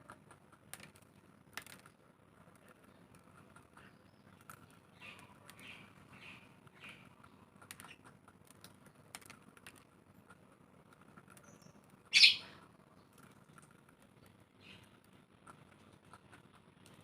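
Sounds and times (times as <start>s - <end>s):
parrot shrill call: 12.1s - 12.5s.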